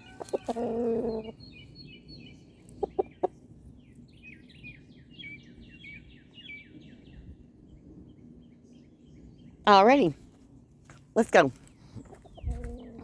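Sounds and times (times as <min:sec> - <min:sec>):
chicken calling: 0:00.0 - 0:01.4
small bird chirping: 0:00.0 - 0:09.6, 0:12.0 - 0:13.0.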